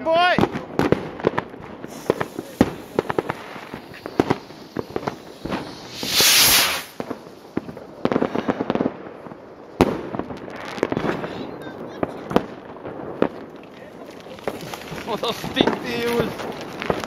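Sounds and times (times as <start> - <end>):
firecrackers cracking: 0.0 - 17.0
loud hissing rush: 1.8 - 7.6.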